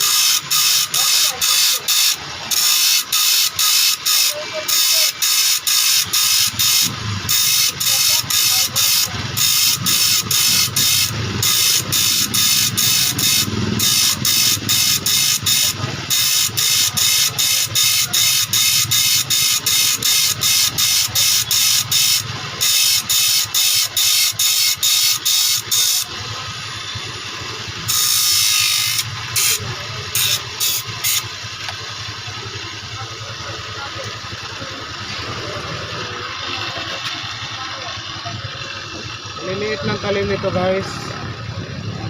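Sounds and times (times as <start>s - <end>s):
file rasping on saw teeth: 0.0s - 26.1s, 27.9s - 31.3s.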